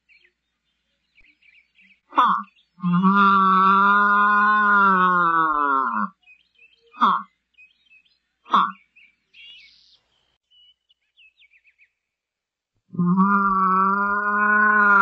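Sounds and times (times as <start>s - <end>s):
faint high bird chirps: 0.0s - 3.2s, 6.0s - 12.2s
large animal calling: 2.1s - 6.2s, 6.9s - 7.3s, 8.5s - 8.9s, 12.9s - 15.0s.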